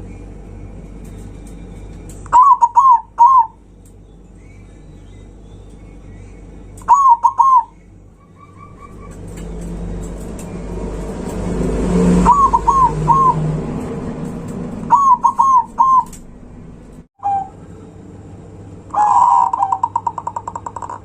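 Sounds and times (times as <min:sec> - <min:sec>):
dove cooing: 0:02.3 - 0:03.6, 0:06.8 - 0:09.6, 0:12.0 - 0:13.7, 0:14.9 - 0:16.2, 0:17.2 - 0:18.0, 0:18.9 - 0:21.0.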